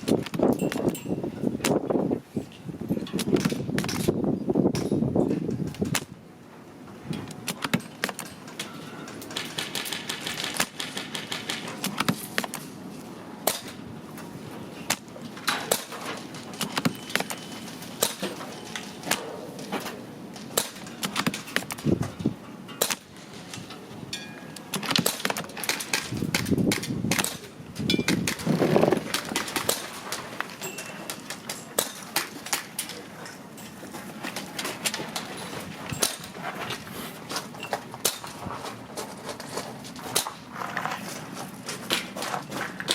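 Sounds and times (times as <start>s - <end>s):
outdoor background noise: 0.0s - 42.9s
airsoft guns firing: 9.3s - 12.6s, 24.7s - 27.5s, 28.1s - 30.2s
pellets striking targets: 14.9s - 17.4s, 18.0s - 19.4s, 20.5s - 21.8s.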